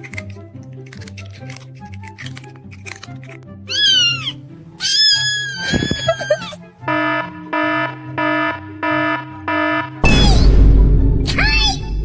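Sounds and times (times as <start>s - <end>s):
background music: 0.0s - 12.0s
cat meowing: 3.7s - 6.5s
electronic alarm beeping: 6.8s - 10.6s.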